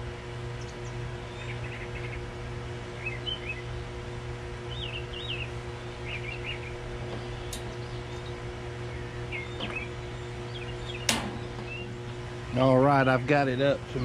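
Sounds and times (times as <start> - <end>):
songbirds chirping: 0.0 - 14.0
steady low hum: 0.0 - 14.0
sharp click: 11.0 - 11.8.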